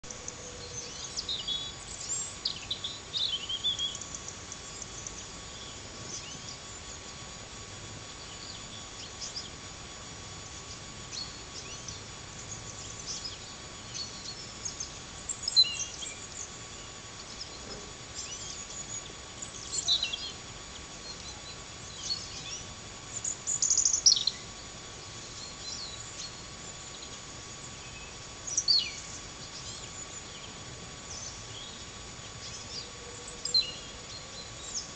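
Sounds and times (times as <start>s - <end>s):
small birds chirping: 0.0s - 34.9s
steady background hiss: 0.0s - 34.9s.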